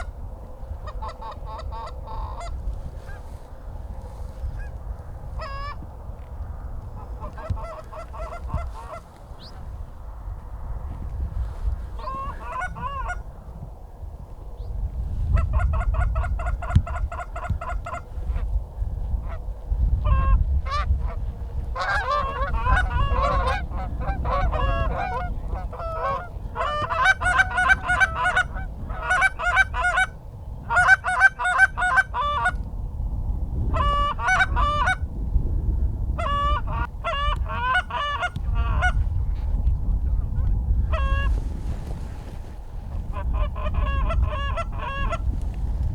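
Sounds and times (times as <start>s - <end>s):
low rumble: 0.0s - 29.0s
goose honks and clucks: 0.8s - 3.3s, 5.4s - 5.8s, 7.0s - 9.6s, 12.0s - 13.2s, 15.3s - 18.5s, 21.8s - 32.6s, 33.7s - 35.0s, 36.2s - 39.0s, 40.9s - 41.4s, 43.1s - 45.2s.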